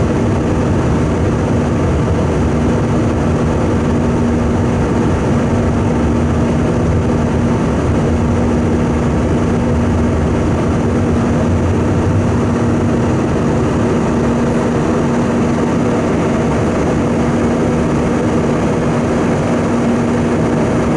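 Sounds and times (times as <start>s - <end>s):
constant hum: 0.0s - 20.9s
jet engine and airflow roar: 0.0s - 20.9s.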